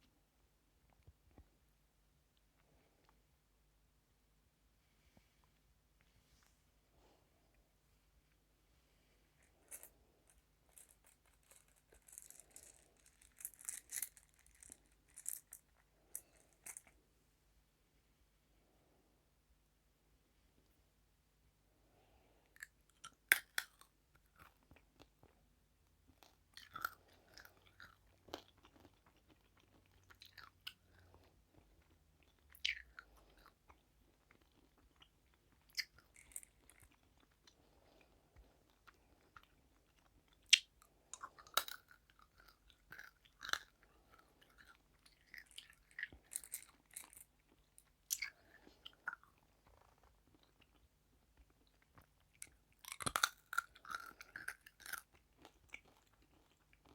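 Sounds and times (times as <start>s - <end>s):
chewing crunchy food: 9.4s - 17.0s, 22.5s - 56.9s.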